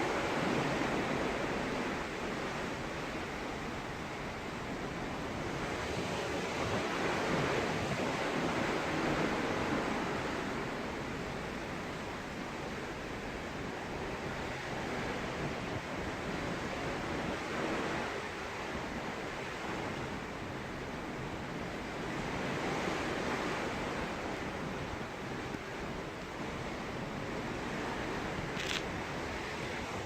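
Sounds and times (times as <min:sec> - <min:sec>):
sea rushing past ship hull: 0:00.0 - 0:30.0
wind: 0:00.0 - 0:30.0.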